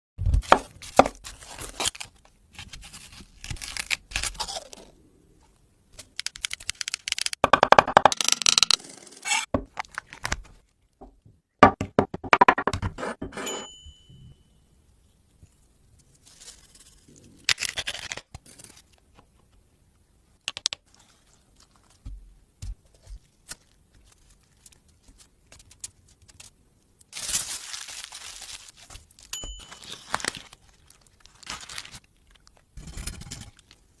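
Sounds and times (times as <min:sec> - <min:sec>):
food tearing and crinkling: 0:00.6 - 0:05.0, 0:20.8 - 0:22.1, 0:22.8 - 0:33.9.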